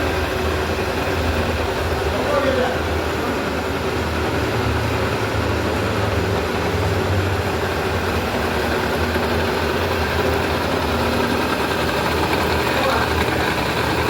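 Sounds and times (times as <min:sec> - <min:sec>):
machine tool humming: 0:02.8 - 0:14.0.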